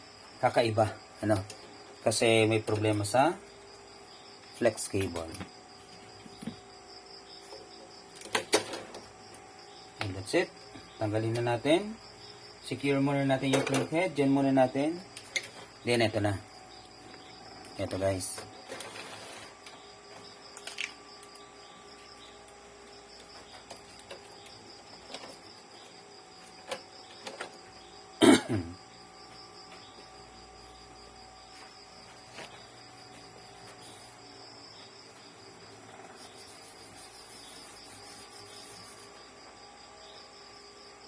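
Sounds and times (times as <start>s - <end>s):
crickets chirring: 0.0s - 41.0s
small clicks: 20.6s - 21.5s.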